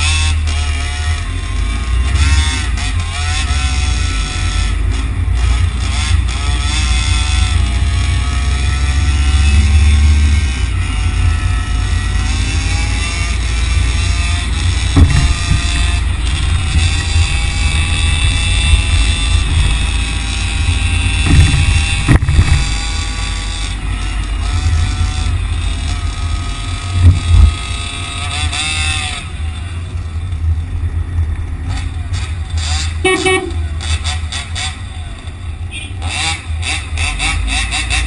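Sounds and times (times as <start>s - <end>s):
wind and road noise: 0.0s - 38.0s
sharp knocks: 14.8s - 19.9s, 21.2s - 22.8s.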